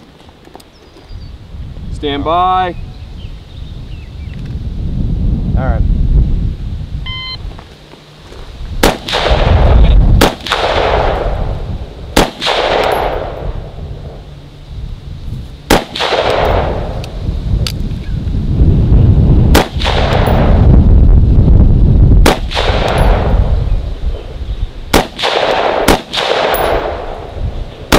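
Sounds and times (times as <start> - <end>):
low rumbling noise: 1.1 - 27.9
rifle shots with echo: 8.8 - 13.8, 15.7 - 16.9, 19.5 - 20.6, 22.2 - 23.5, 24.9 - 27.3.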